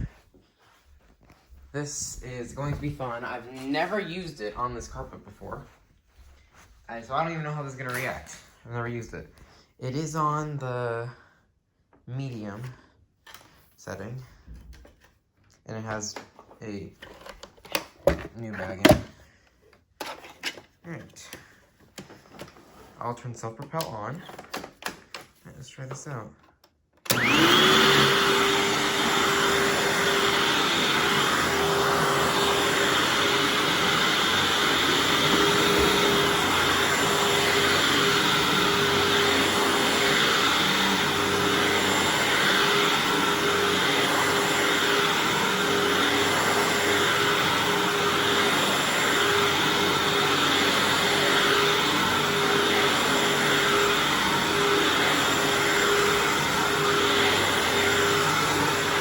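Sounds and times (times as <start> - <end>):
upright vacuum cleaner running: 1.8 - 5.7, 27.1 - 59.0.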